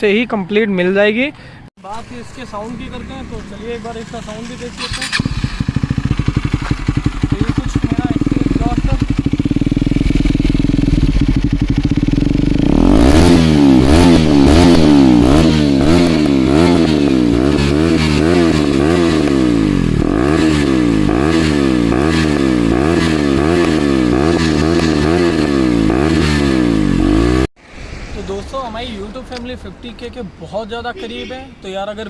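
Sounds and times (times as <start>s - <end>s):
motorcycle engine revving: 1.9s - 27.5s.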